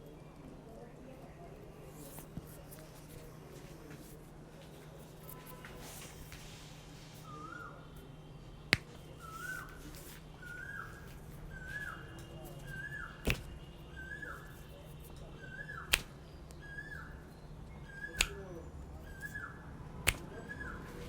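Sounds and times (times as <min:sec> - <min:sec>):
sharp snaps: 0:08.6 - 0:20.8.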